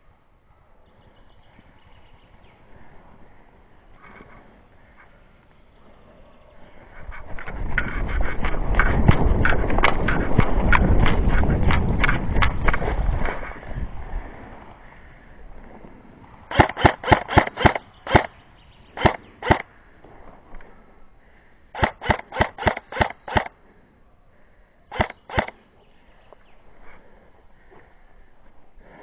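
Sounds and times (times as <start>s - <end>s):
airsoft guns firing: 16.5s - 18.4s, 19.0s - 19.7s, 21.8s - 23.6s, 24.9s - 25.6s.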